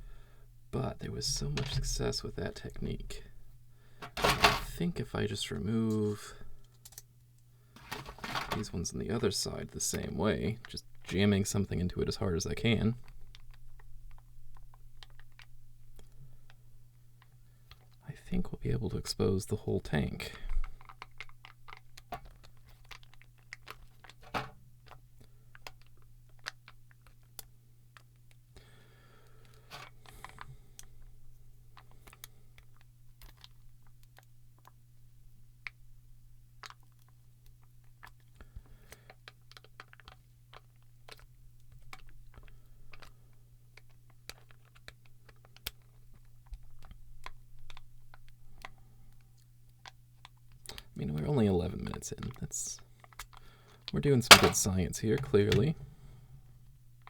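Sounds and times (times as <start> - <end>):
plastic clicks and creaks: 4.0 - 4.7, 20.5 - 28.4, 39.1 - 43.2
plastic crack: 4.0 - 4.7, 7.8 - 8.7, 20.6 - 28.1, 54.2 - 55.8.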